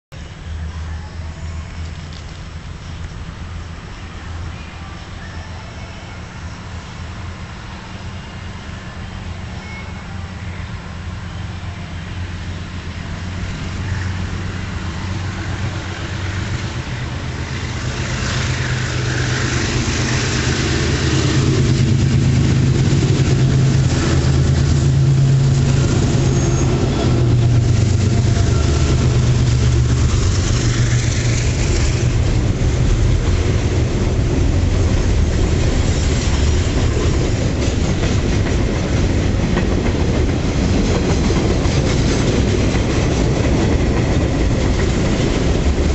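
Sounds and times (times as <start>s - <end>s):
diesel locomotive engine drone: 0.1s - 45.9s
train wheels clattering over joints: 17.8s - 45.9s.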